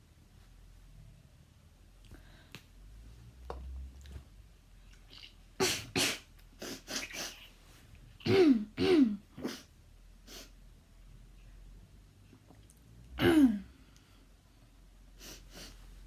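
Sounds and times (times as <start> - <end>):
person coughing: 8.2 - 9.7, 13.2 - 13.7.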